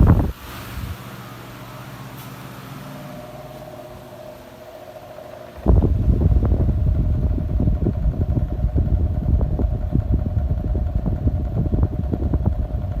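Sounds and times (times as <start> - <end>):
wind buffeting microphone: 0.0 - 1.0, 5.6 - 13.0
fan motor hum: 0.0 - 13.0.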